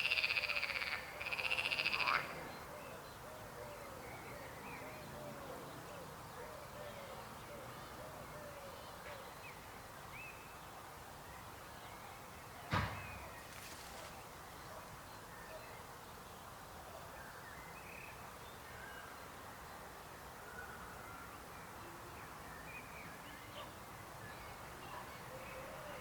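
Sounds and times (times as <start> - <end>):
frogs croaking: 0.0 - 2.7
sharp knock: 12.7 - 13.2.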